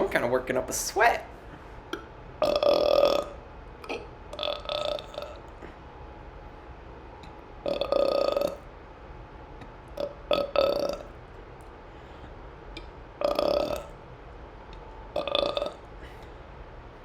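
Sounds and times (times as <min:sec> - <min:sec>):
person burping: 0:01.9 - 0:05.4, 0:07.6 - 0:08.6, 0:10.0 - 0:11.1, 0:13.2 - 0:13.9, 0:15.2 - 0:15.8.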